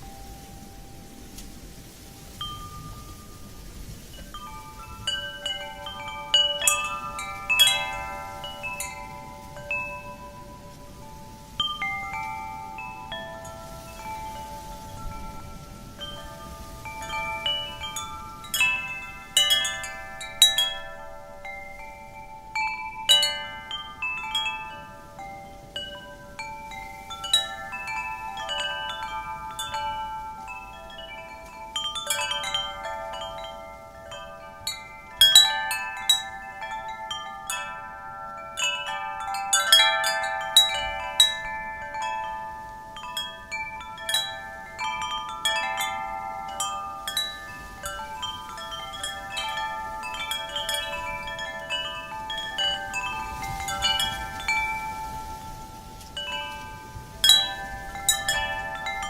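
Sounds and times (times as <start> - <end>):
faint low wind rush: 0.0 - 59.0
wind chimes ringing: 0.0 - 59.0.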